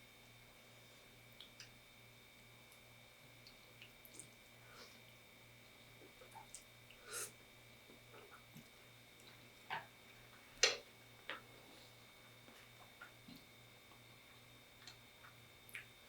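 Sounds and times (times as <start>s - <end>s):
wet mouth clicks and smacks: 15.7s - 15.9s.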